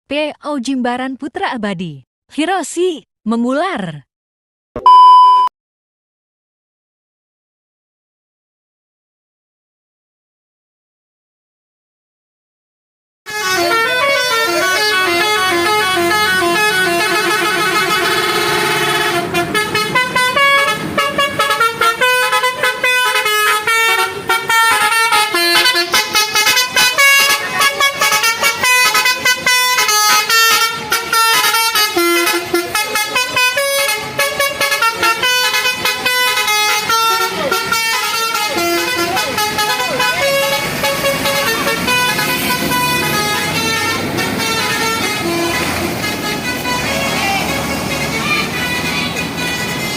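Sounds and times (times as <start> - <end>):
musical bus horn playing a tune: 13.3 - 49.9.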